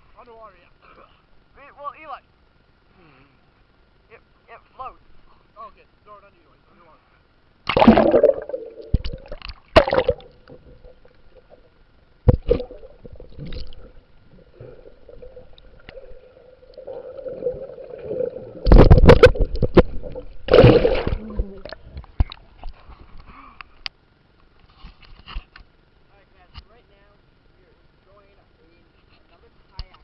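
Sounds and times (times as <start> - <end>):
water splashing: 7.7 - 11.7, 12.3 - 22.4
muffled water gurgling underwater: 7.7 - 22.5.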